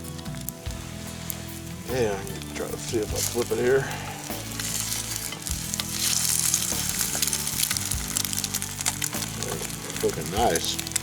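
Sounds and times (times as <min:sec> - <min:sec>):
egg sizzling in a skillet: 0:00.0 - 0:11.0
wooden spatula scraping: 0:00.0 - 0:11.0.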